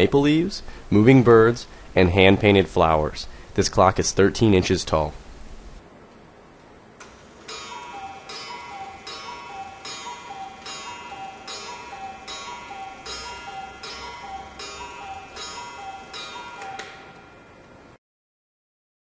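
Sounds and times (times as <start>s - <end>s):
cuckoo clock calling: 7.4s - 17.8s.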